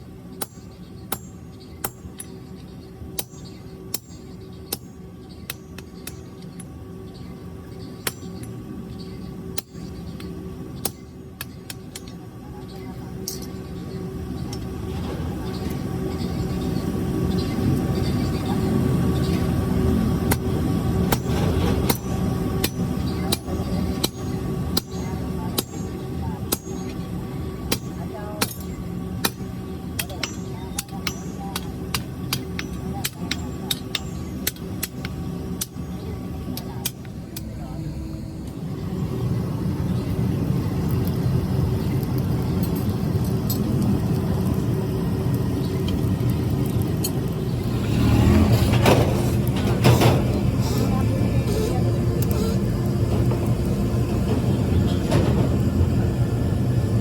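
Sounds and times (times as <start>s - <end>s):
machinery low rumble: 0.0s - 57.0s
hammer striking hot steel on anvil: 0.4s - 2.4s, 3.1s - 6.7s, 8.0s - 8.5s, 9.5s - 12.2s, 21.0s - 25.9s, 26.5s - 27.0s, 27.7s - 35.8s.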